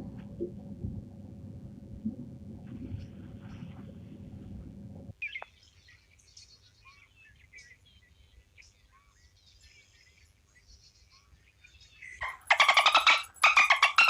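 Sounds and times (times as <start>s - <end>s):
low rumbling noise: 0.0s - 5.2s
birds chirping and whistling: 12.0s - 14.0s.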